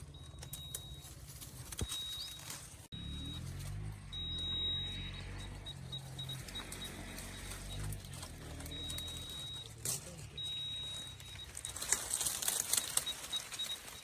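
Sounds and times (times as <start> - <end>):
drilling rig engine hum: 2.9 - 14.0.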